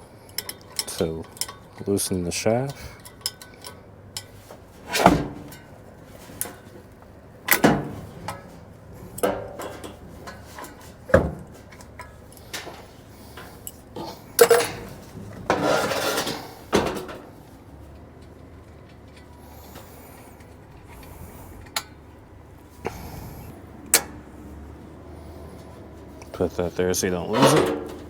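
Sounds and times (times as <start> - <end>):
rattling scrape: 2.8 - 17.7, 25.2 - 28.0.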